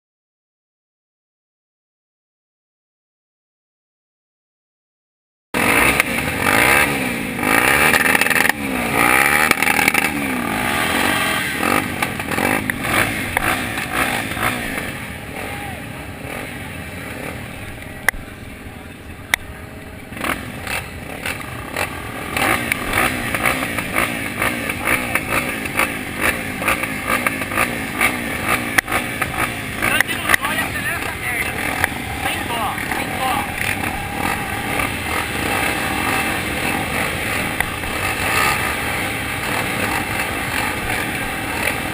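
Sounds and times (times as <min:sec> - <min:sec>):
motorcycle engines revving: 0:05.6 - 0:41.9.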